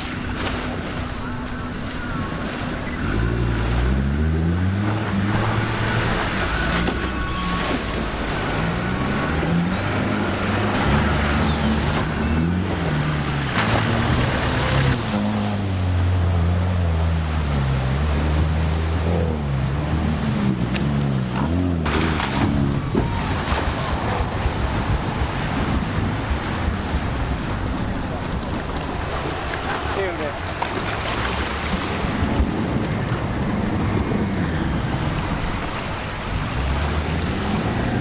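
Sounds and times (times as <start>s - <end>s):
vehicle engine revving: 2.0s - 38.0s
wind noise on microphone: 21.8s - 29.5s, 31.2s - 38.0s.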